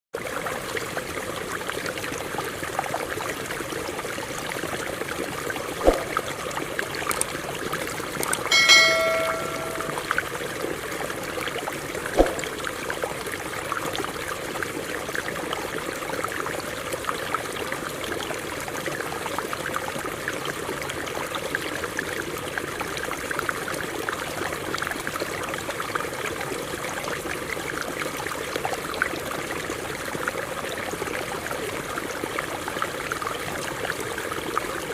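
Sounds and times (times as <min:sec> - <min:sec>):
sharp knocks: 0:08.5 - 0:10.1
brief pitched tone: 0:08.5 - 0:10.2.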